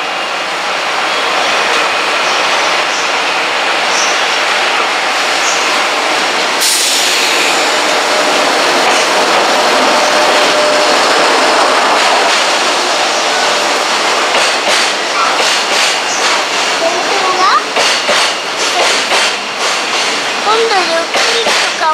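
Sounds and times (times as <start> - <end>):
freight train rumbling past: 0.0 - 21.9
wheel clacks over rail joints: 14.3 - 21.9.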